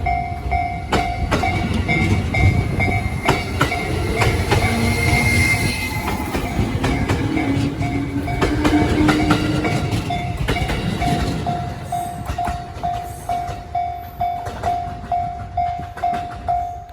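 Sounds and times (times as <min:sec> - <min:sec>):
crossing warning bell ringing: 0:00.0 - 0:16.9
train wheels clattering on rails: 0:00.0 - 0:16.9.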